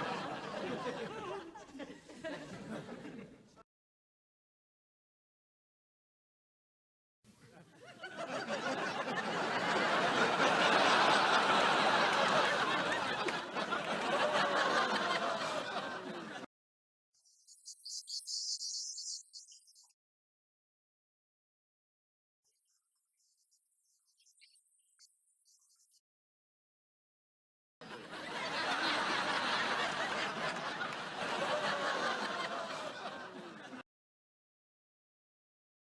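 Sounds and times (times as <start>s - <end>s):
studio audience laughing: 0.0s - 3.6s, 7.3s - 16.5s, 27.8s - 33.8s.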